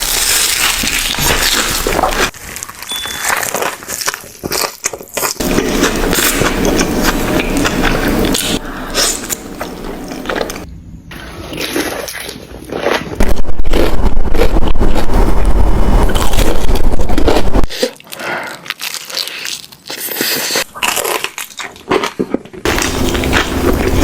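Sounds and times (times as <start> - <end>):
crunching chewing: 0.0 - 24.0
wet slurping: 5.3 - 13.3, 22.7 - 24.0.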